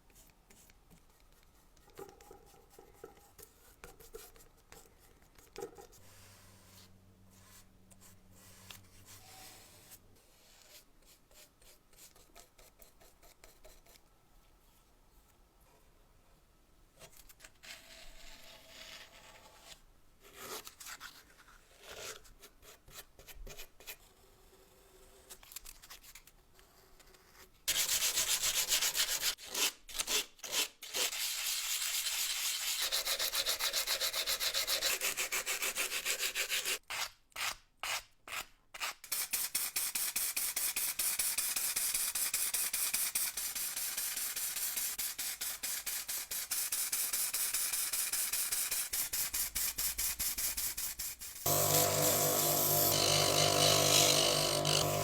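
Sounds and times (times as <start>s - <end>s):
sanding and scrubbing metal parts: 42.0s - 55.0s.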